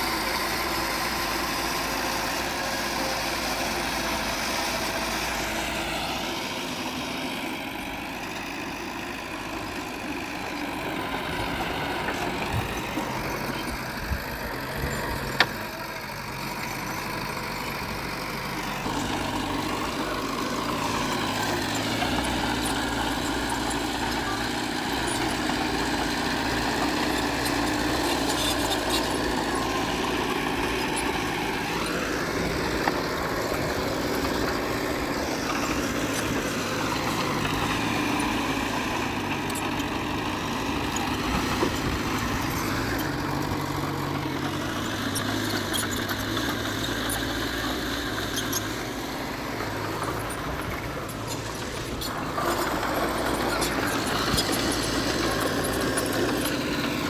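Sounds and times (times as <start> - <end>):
heavy machinery diesel engines: 0.0 - 57.0.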